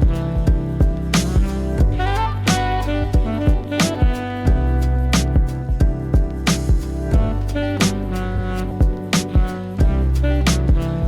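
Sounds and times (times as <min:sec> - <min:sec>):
jazzy funk music: 0:00.0 - 0:11.0.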